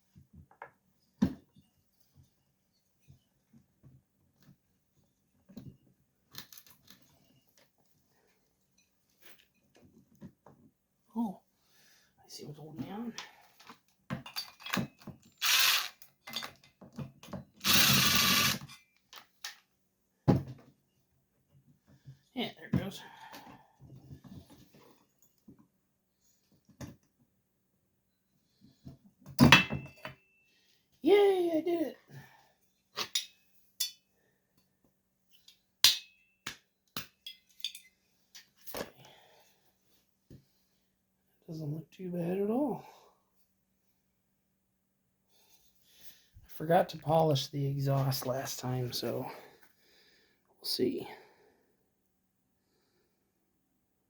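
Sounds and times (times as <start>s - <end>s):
clicks and knocks of metal parts: 13.2s - 17.4s
ratcheting tool bursts: 15.4s - 16.1s, 17.6s - 18.7s.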